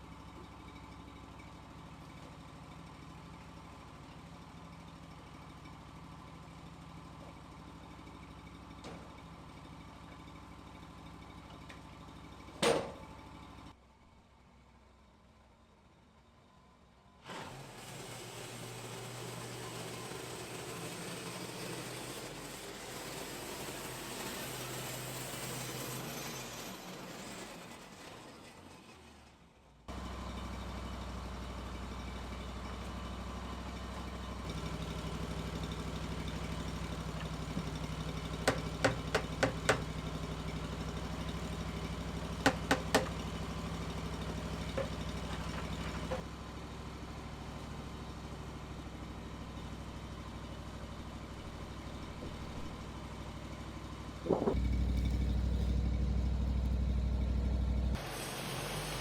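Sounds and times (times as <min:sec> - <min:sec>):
engine idling: 0:29.9 - 0:59.0.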